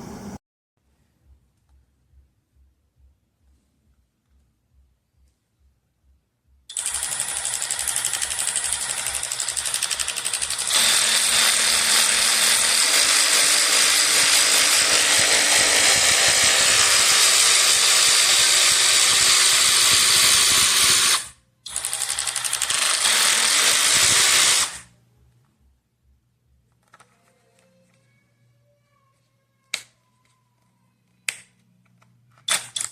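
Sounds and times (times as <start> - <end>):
electric ratchet wrench whirring: 6.7 - 24.9.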